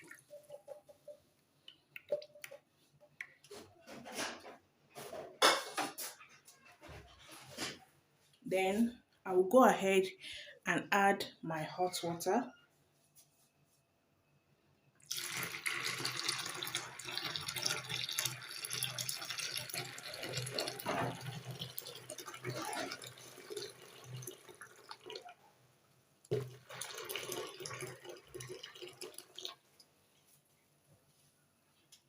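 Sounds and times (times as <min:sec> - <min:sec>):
water pouring into a bowl: 0:00.0 - 0:00.9, 0:15.0 - 0:25.4, 0:26.3 - 0:29.8.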